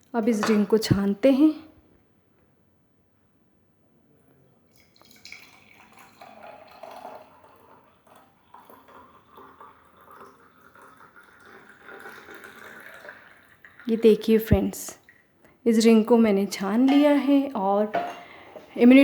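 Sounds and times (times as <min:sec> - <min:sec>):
liquid trickling through strainer: 0:04.8 - 0:14.0.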